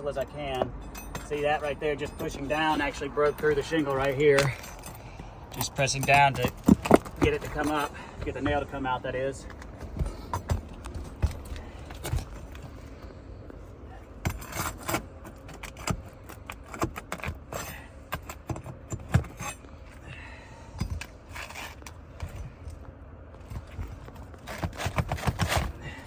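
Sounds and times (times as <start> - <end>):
roof shingles crunching and cracking: 0.1 - 13.1, 21.1 - 26.0
clicks knocks and scrapes: 0.2 - 8.8, 14.2 - 19.7, 20.8 - 22.8, 23.4 - 26.0.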